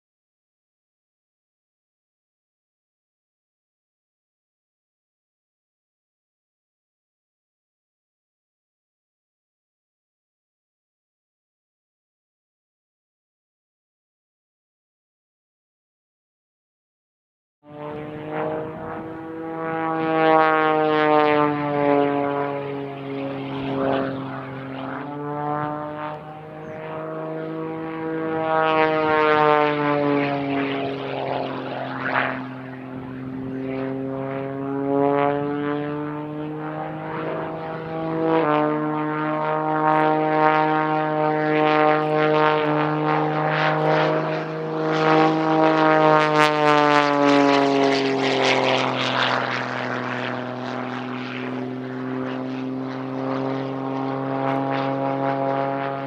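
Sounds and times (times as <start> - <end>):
propeller aircraft engine: 17.6 - 56.0.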